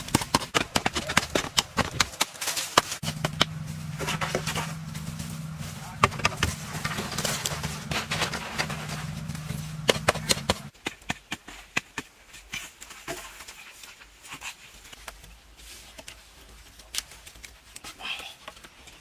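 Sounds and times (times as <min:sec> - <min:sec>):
steady low hum: 0:02.8 - 0:10.7.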